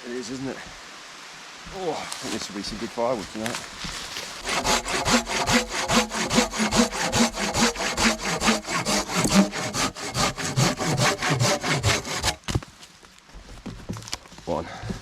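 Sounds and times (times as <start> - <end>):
hand saw cutting branch: 2.2 - 12.4.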